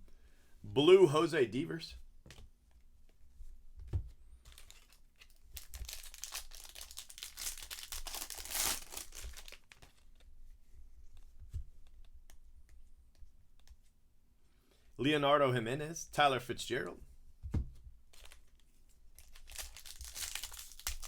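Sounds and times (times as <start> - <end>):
foil wrapper tearing and crinkling: 4.5 - 10.1, 18.1 - 18.6, 19.2 - 21.0.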